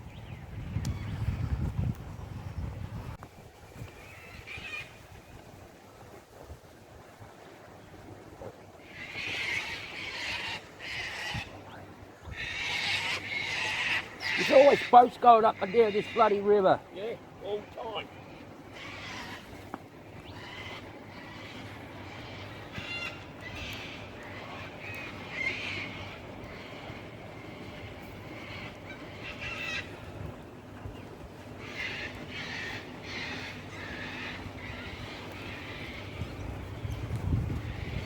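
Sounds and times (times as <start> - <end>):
birds harsh calls: 8.8 - 38.0.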